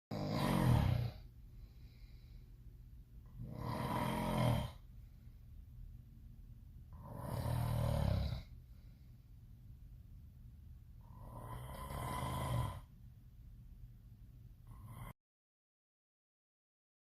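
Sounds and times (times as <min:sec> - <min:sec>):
person snoring loudly: 0:00.1 - 0:01.3, 0:03.3 - 0:04.9, 0:06.9 - 0:08.6, 0:11.0 - 0:12.9, 0:14.7 - 0:15.2.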